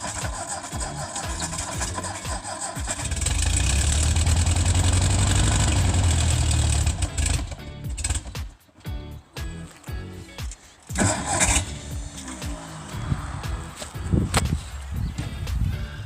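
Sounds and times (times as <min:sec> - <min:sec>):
engine cranking and starting: 0:00.0 - 0:08.5, 0:10.5 - 0:13.9.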